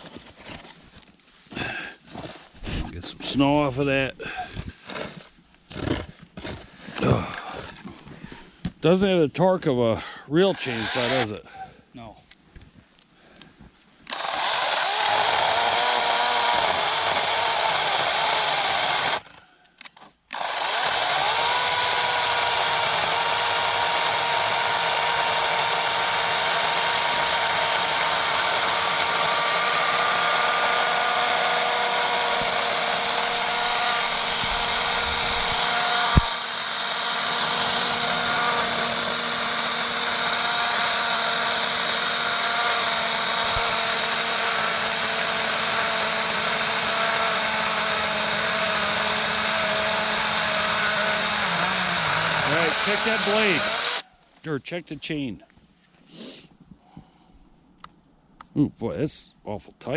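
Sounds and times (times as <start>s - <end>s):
electric chainsaw cutting wood: 10.4s - 11.4s, 14.1s - 19.3s, 20.3s - 54.1s.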